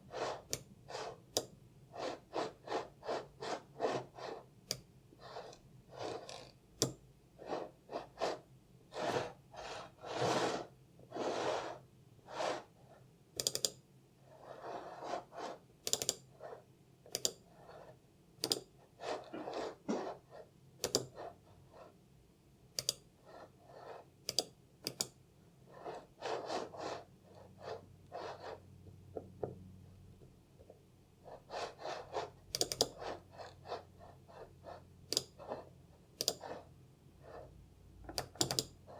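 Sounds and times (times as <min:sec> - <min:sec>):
mouse sliding across desk: 0:00.1 - 0:01.2, 0:01.9 - 0:04.5, 0:05.2 - 0:06.6, 0:07.4 - 0:13.0, 0:14.3 - 0:15.7, 0:19.0 - 0:20.5, 0:23.2 - 0:24.1, 0:25.7 - 0:28.6, 0:31.2 - 0:34.8
mouse clicking: 0:13.4 - 0:13.8, 0:15.8 - 0:16.3, 0:17.1 - 0:17.4, 0:18.4 - 0:18.7, 0:20.8 - 0:21.2, 0:22.8 - 0:23.1, 0:24.3 - 0:25.2, 0:32.5 - 0:33.0, 0:35.1 - 0:35.4, 0:36.2 - 0:36.5, 0:38.1 - 0:38.8.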